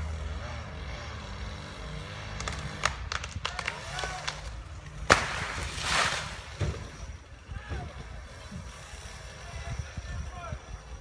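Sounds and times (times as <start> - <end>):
low engine hum: 0.0 - 11.0
people talking: 3.4 - 4.5, 7.4 - 8.2, 9.3 - 10.9.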